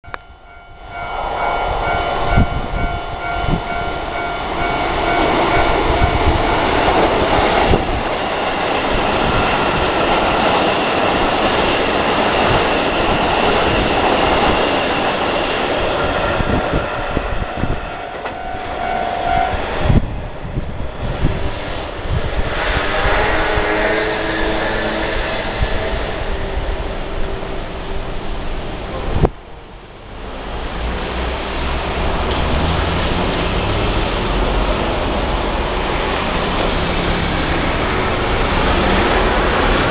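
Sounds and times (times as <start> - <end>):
level crossing bell ringing: 0.0 - 6.7.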